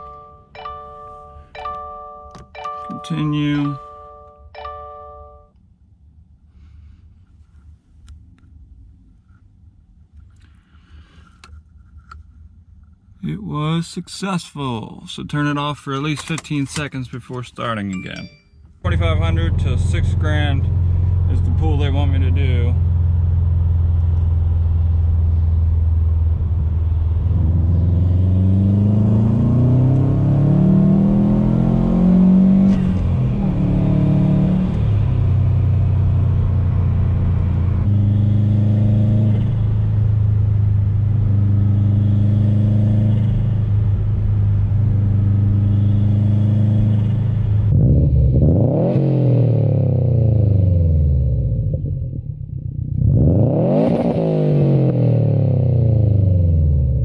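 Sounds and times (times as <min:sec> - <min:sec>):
car engine revving: 0:18.9 - 0:57.0.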